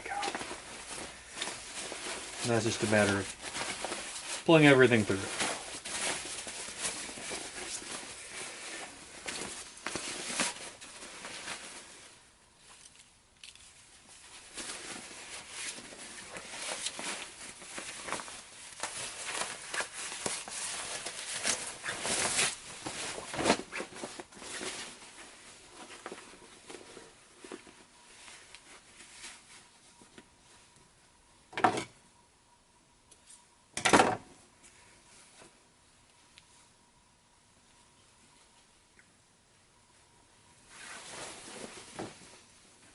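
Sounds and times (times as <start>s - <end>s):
fabric rustling: 0.0s - 30.8s, 39.9s - 42.9s.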